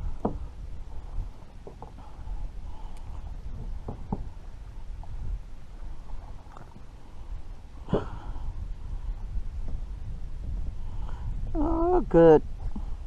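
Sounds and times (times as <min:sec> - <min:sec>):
low steady rumble: 0:00.0 - 0:13.0
knocks in a kayak: 0:00.2 - 0:00.5, 0:03.8 - 0:04.3.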